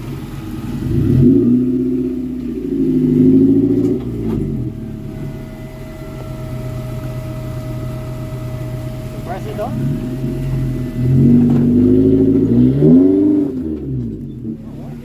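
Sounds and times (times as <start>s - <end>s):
engine revving and idling: 0.0s - 15.0s.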